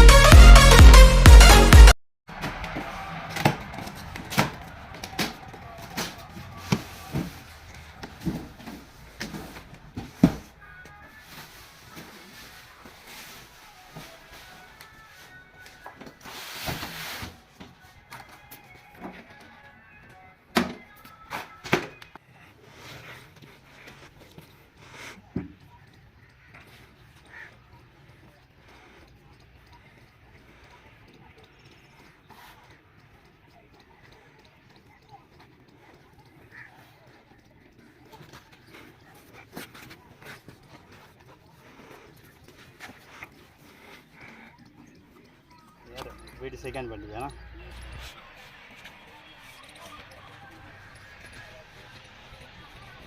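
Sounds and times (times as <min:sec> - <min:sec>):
electronic dance music: 0:00.0 - 0:07.5
faint background music: 0:02.8 - 0:53.0.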